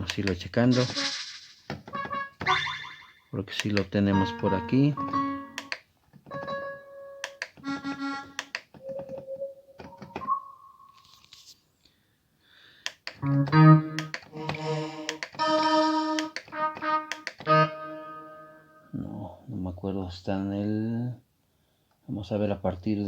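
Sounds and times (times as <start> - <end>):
keyboard playing chords: 0.7 - 1.2, 1.9 - 3.4, 4.0 - 11.0, 13.2 - 19.0.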